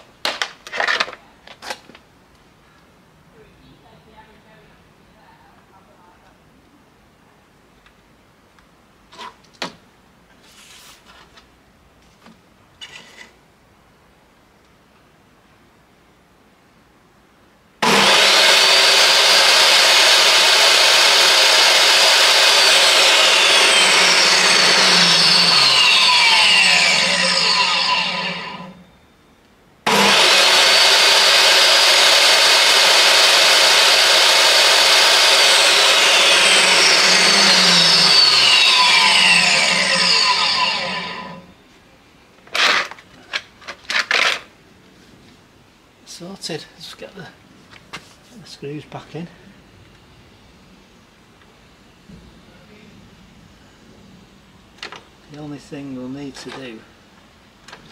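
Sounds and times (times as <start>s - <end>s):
table saw motor starting and winding down: 17.8s - 28.8s, 29.9s - 41.5s.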